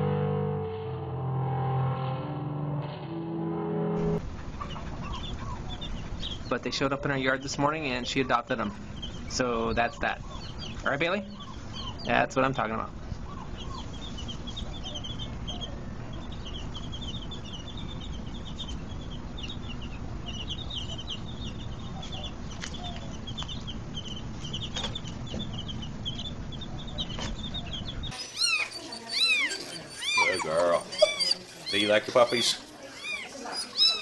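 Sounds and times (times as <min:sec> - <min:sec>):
steady low rumble: 0:04.0 - 0:28.2
baby birds peeping: 0:04.2 - 0:34.0.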